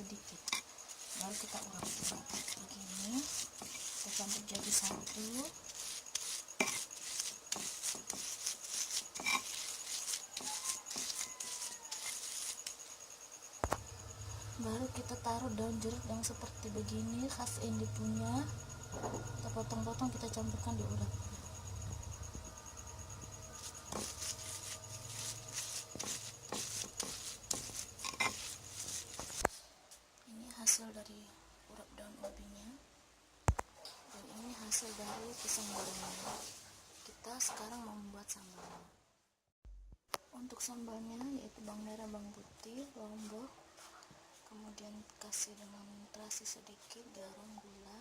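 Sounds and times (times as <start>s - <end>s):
pestle grinding in a mortar: 0.3s - 13.0s, 18.5s - 29.5s
knife cutting on a board: 0.5s - 12.8s, 23.5s - 29.5s
faint low hum: 12.3s - 33.2s.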